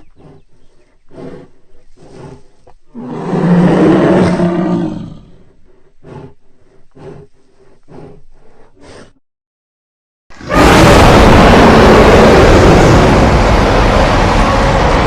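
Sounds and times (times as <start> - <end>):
creature roar: 3.0 - 5.3, 10.4 - 15.0.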